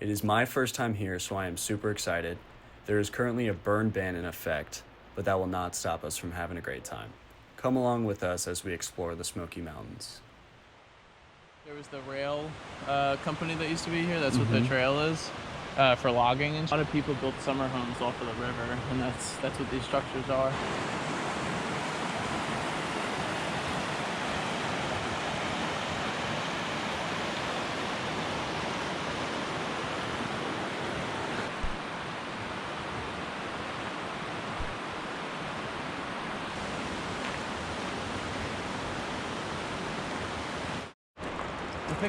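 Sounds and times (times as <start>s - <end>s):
mountain river rushing: 11.2s - 42.0s.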